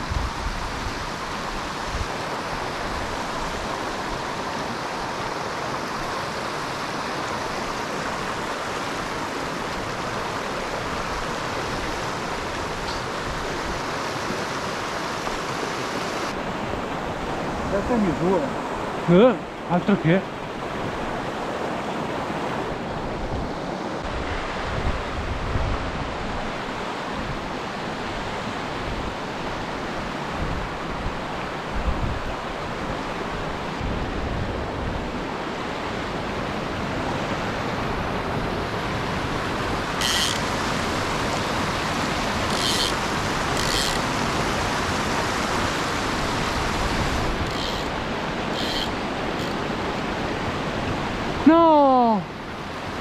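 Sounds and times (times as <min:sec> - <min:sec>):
mountain torrent rushing: 0:00.0 - 0:53.0
wind on microphone: 0:20.4 - 0:27.6, 0:30.3 - 0:35.4, 0:36.0 - 0:51.5.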